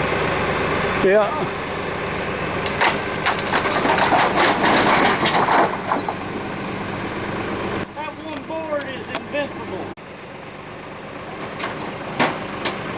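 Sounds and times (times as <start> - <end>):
steady engine hum: 0.0 - 12.9
wood and branches snapping: 2.6 - 6.0.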